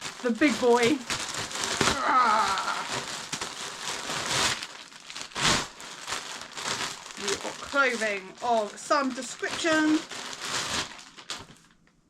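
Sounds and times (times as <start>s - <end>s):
packaging ripping: 0.0s - 11.8s
packaging crinkling: 0.0s - 12.0s.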